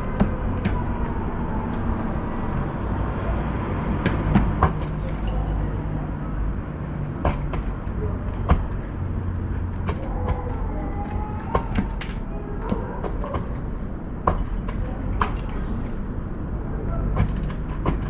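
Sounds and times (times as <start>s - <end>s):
wind rumble: 0.0s - 17.9s
city background noise: 0.0s - 18.0s.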